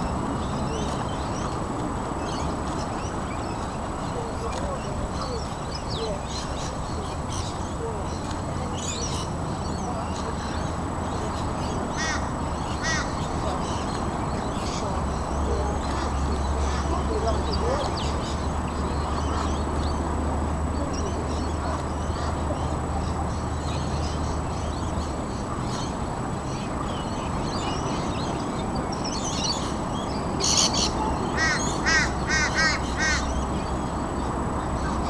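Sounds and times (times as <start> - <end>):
faint birds chirping: 0.0 - 35.0
loud bird call: 11.2 - 19.7, 30.4 - 34.0.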